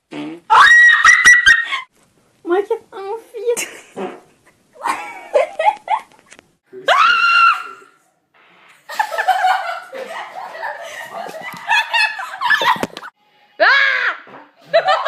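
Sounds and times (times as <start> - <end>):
people laughing: 8.9 - 13.1, 14.6 - 15.0.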